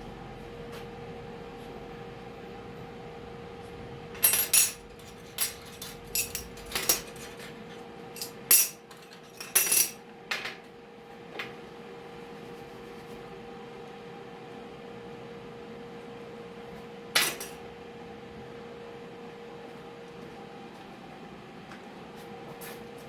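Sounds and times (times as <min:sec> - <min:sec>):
steel pieces clinking and clanking: 0:04.2 - 0:07.5, 0:08.2 - 0:10.0.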